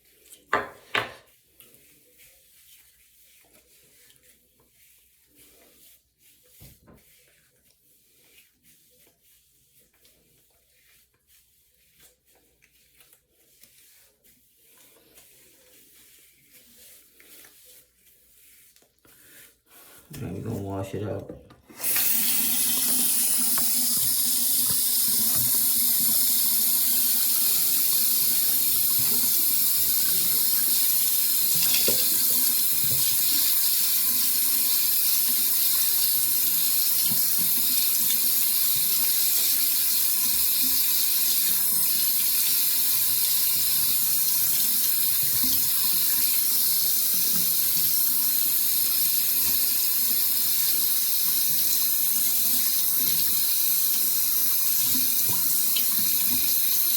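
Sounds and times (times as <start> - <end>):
tap water running: 20.1 - 56.9.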